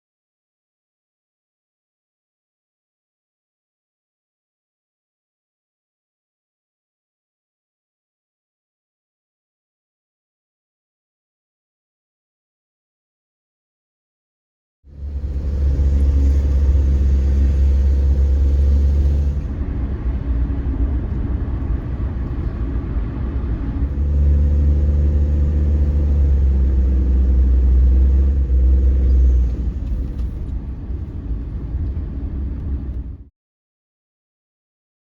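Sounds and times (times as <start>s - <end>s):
car engine and road rumble: 14.9s - 33.3s.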